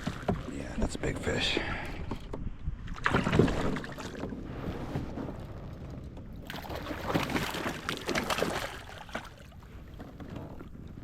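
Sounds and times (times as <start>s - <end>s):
water splashing: 6.4s - 9.6s.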